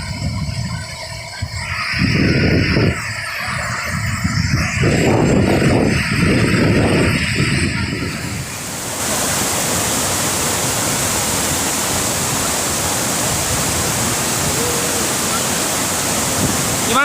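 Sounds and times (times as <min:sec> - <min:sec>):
waterfall roaring: 0:00.0 - 0:17.0.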